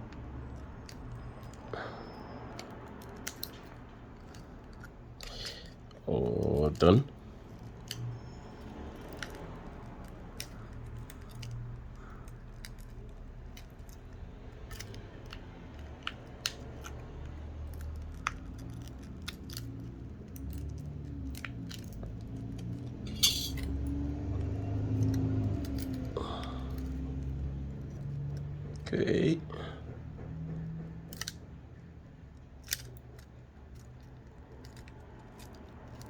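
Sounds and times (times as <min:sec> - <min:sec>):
pry tool clicking and scraping: 0:00.0 - 0:06.0, 0:07.6 - 0:28.8, 0:30.5 - 0:31.7, 0:32.3 - 0:36.0
low steady hum: 0:17.8 - 0:35.4.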